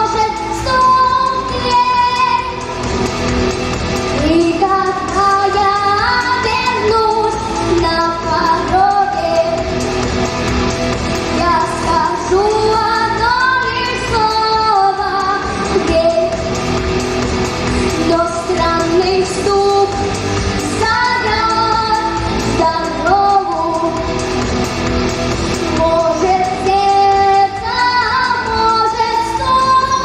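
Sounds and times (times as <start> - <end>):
band backing track: 0.0 - 30.0
woman singing rock song: 25.7 - 30.0.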